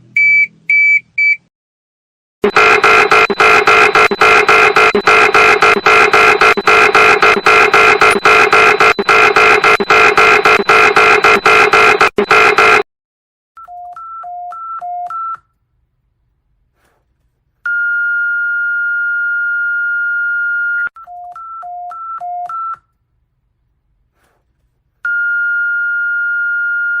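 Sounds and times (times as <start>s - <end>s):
alternating high and low beeps: 2.4s - 12.8s
harsh pulsing electronic sound: 2.4s - 12.8s
steady high tone: 2.4s - 12.8s.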